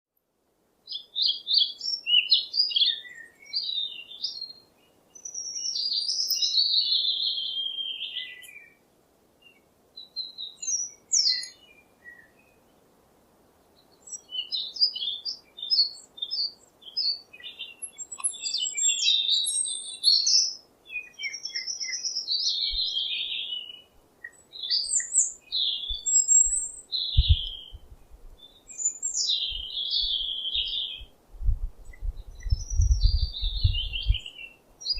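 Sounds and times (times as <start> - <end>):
songbirds chirping and warbling: 0.8 - 34.9
faint low thumps: 31.4 - 34.2.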